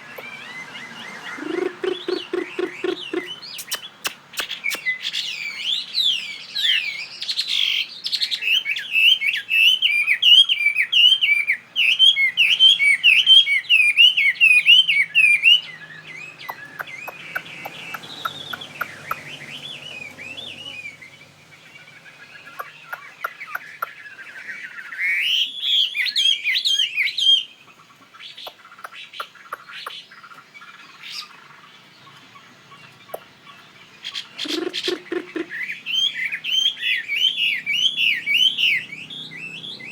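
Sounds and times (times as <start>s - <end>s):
bird warbling song: 0.0s - 39.9s
short clicks: 3.6s - 4.9s.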